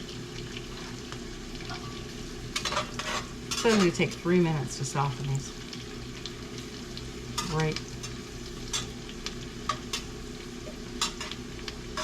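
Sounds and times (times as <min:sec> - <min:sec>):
vegetables sizzling in a pot: 0:00.0 - 0:12.0
spoon scraping a pot: 0:02.6 - 0:04.0.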